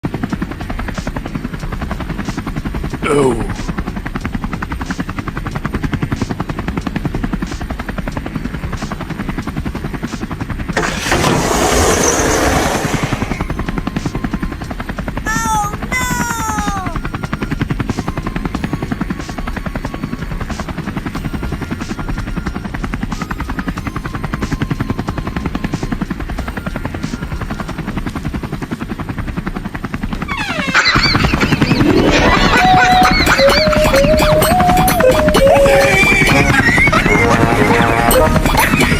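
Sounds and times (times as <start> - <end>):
helicopter rotor chopping: 0.0 - 38.9
short falling squeals: 10.8 - 14.7, 30.3 - 36.8.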